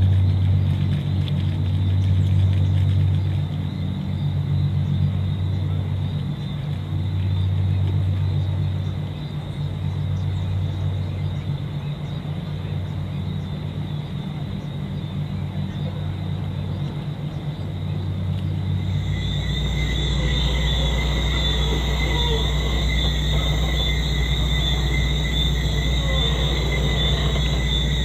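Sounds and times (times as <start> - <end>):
low engine drone: 0.0 - 28.0
high whining tones: 18.8 - 28.0.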